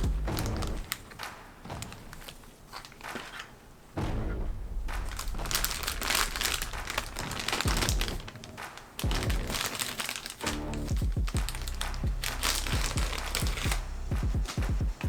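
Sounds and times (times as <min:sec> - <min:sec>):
toy packaging crinkling: 0:05.1 - 0:14.7.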